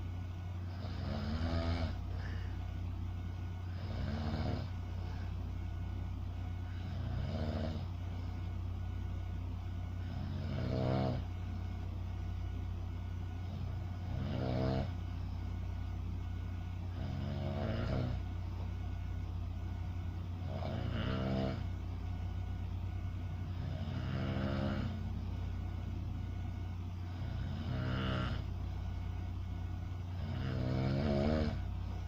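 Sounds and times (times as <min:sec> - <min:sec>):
steady low hum: 0:00.0 - 0:32.0
person snoring: 0:00.6 - 0:02.6, 0:03.6 - 0:05.3, 0:06.6 - 0:07.9, 0:10.0 - 0:11.3, 0:13.4 - 0:15.0, 0:16.9 - 0:18.2, 0:20.4 - 0:21.7, 0:23.5 - 0:25.1, 0:27.0 - 0:28.6, 0:30.1 - 0:31.7.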